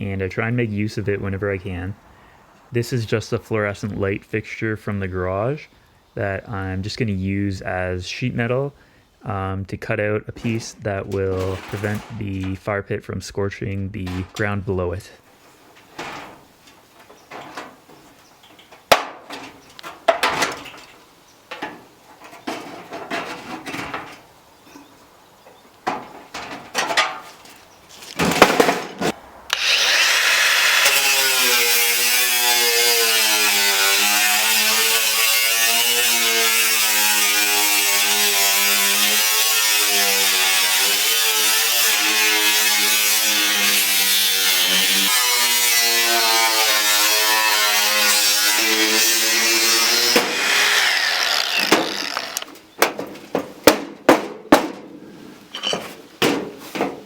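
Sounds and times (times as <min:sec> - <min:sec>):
knocks and clicks on sheet metal: 0:18.6 - 0:24.2, 0:51.7 - 0:55.0, 0:56.2 - 0:57.0
power tool cutting sheet metal: 0:29.5 - 0:52.5.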